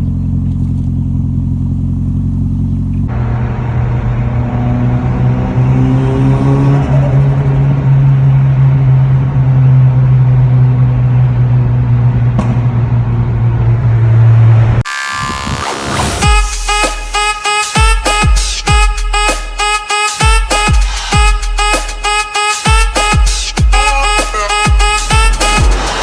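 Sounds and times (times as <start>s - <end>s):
car engine droning at steady revs: 0.0s - 14.8s
music: 14.9s - 26.0s.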